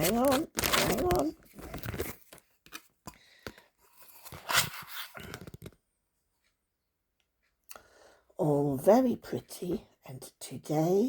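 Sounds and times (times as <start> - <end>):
packaging rustling and tearing: 0.0 - 2.8, 4.1 - 5.8.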